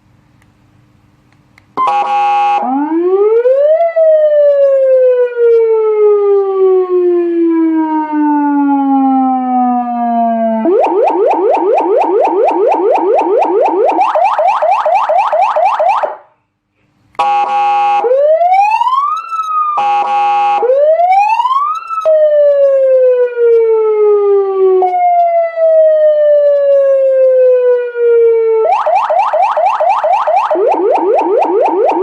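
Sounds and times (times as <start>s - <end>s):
siren horn blast: 1.8s - 3.6s, 17.2s - 32.0s
electronic siren sweeping: 1.8s - 16.3s, 17.9s - 32.0s.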